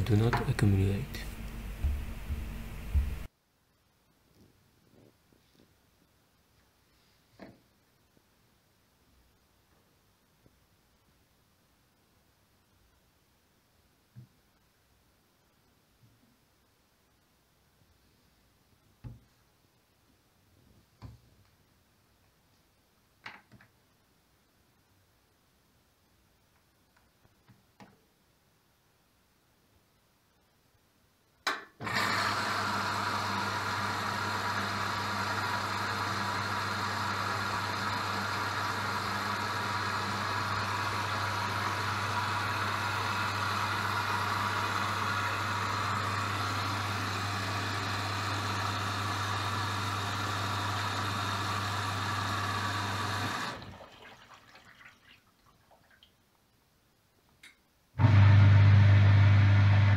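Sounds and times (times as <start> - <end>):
low electrical hum: 0.0 - 6.6
water flowing through drum: 53.1 - 56.2.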